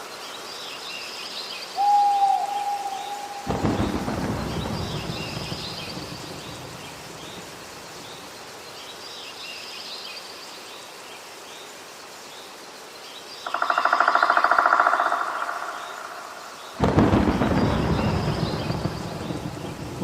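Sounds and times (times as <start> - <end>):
thunder rumble: 2.4 - 8.5, 16.7 - 20.0.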